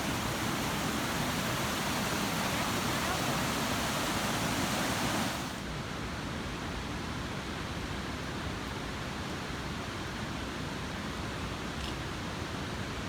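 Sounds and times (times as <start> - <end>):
mountain stream rushing: 0.0 - 5.6.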